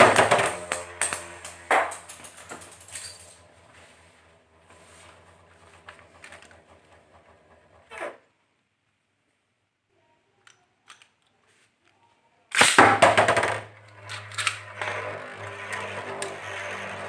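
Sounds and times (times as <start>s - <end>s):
spinning tops clashing: 0.0s - 3.8s
spinning tops humming: 0.0s - 7.9s
spinning tops rattling: 0.0s - 7.9s.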